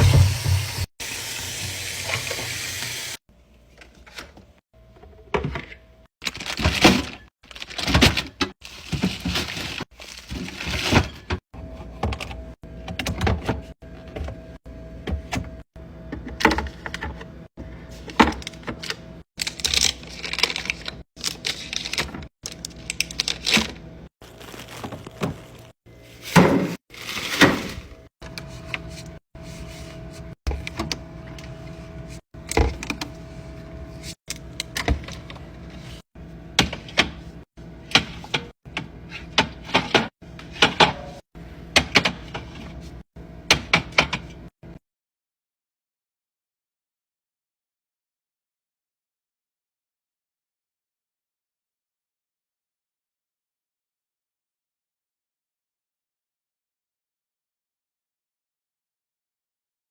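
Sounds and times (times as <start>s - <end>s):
food packages being set down: 24.2s - 28.1s.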